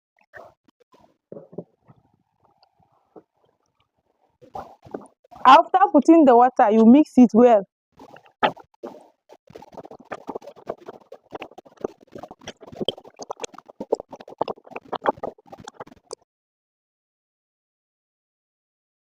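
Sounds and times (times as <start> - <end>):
batter squelching and scraping: 8.0 - 16.2.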